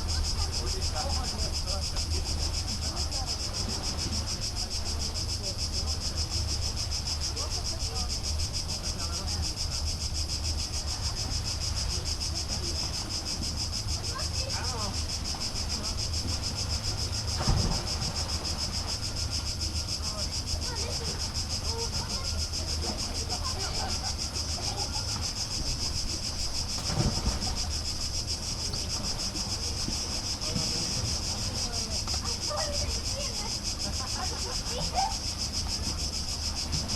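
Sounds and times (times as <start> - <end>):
insect chorus pulsing buzz: 0.0 - 36.9.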